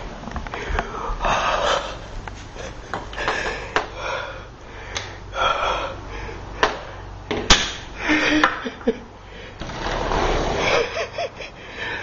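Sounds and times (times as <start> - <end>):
breathy puffs: 0.5 - 7.1.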